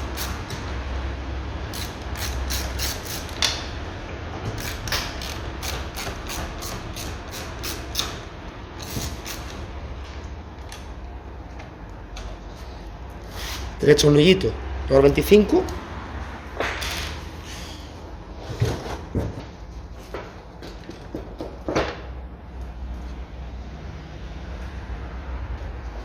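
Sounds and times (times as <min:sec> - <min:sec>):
ratchet clicking: 0:00.0 - 0:00.6, 0:01.7 - 0:03.7, 0:04.5 - 0:09.6.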